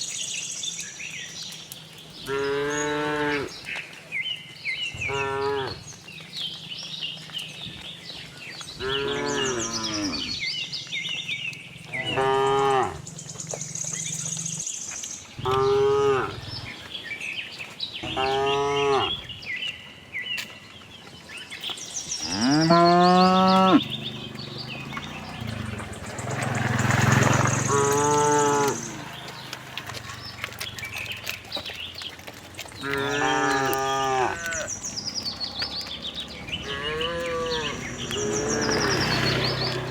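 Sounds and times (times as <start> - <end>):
cattle mooing: 2.2 - 3.6, 5.0 - 6.0, 8.8 - 10.4, 11.9 - 13.1, 15.4 - 16.7, 18.0 - 19.2, 22.2 - 31.3, 32.8 - 39.9.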